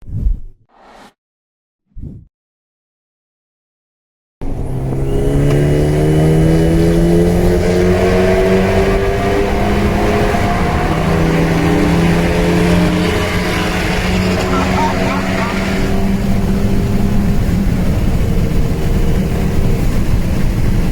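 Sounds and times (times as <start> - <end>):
sports car engine accelerating: 4.4 - 20.9.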